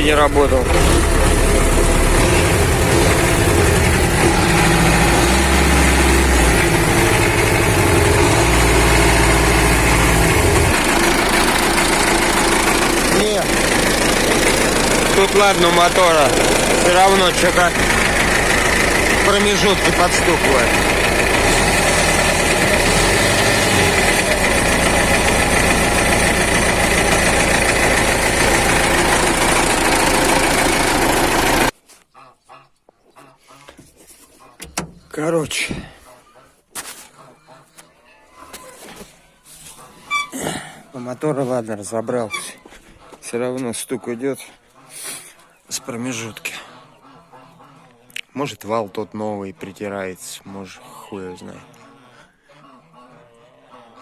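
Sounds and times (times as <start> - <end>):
tractor diesel engine idling: 0.0 - 31.8.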